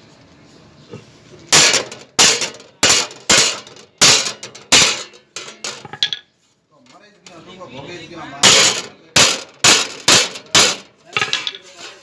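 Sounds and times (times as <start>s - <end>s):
hammer striking metal: 1.5s - 6.1s, 8.4s - 11.6s.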